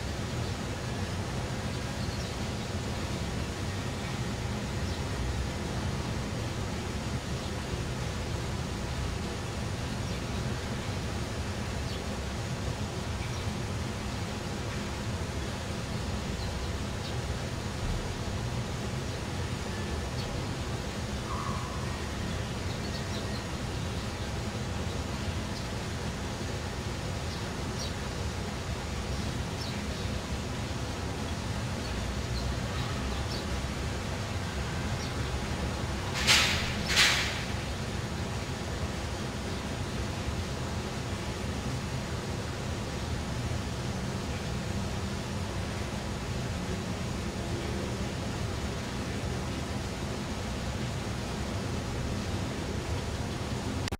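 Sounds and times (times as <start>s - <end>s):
faint bird chirps: 21.3s - 23.5s
hiss: 36.0s - 38.4s.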